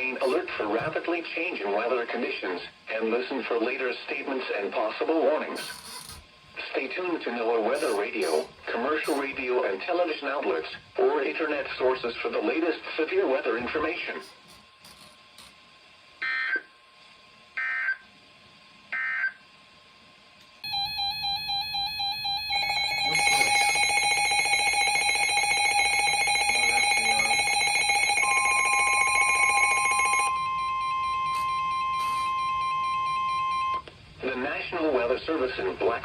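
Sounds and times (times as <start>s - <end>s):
digital data bursts: 5.6s - 6.2s, 7.7s - 9.3s, 20.6s - 33.3s
two-tone electronic alarm: 17.6s - 18.0s, 19.0s - 19.4s, 20.6s - 33.8s
steady alert tone: 20.6s - 33.8s.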